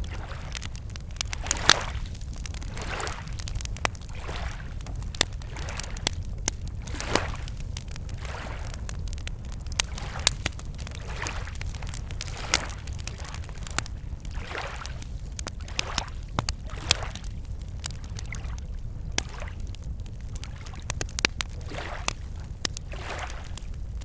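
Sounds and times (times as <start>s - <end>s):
campfire crackling and popping: 0.0s - 24.0s
lake waves lapping on shore: 0.1s - 6.2s, 6.8s - 8.8s, 9.8s - 17.2s, 19.2s - 19.6s, 21.6s - 22.2s, 22.9s - 23.7s.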